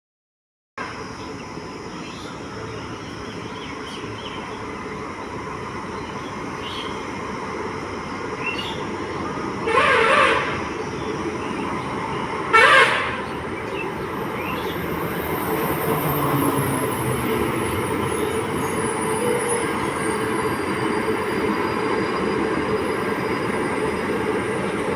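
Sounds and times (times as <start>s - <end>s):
train running noise: 0.8s - 24.9s
locomotive horn blasts: 9.6s - 10.7s, 12.5s - 13.4s.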